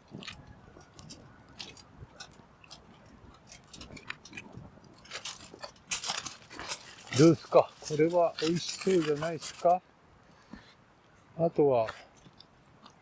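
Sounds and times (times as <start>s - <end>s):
aluminium foil crinkling: 0.8s - 9.8s.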